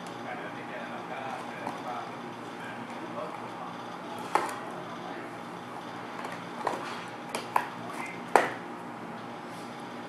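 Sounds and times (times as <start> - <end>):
clicks and taps handling packaging: 6.2 - 8.6.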